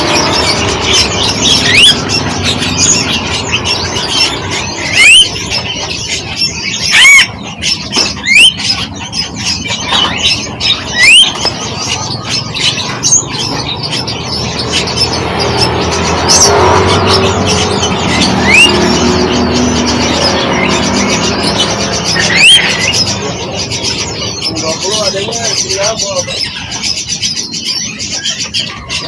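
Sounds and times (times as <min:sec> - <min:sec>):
birds chirping and squawking: 0:00.0 - 0:29.0
loud rising bird whistles: 0:04.9 - 0:05.3, 0:10.9 - 0:11.4.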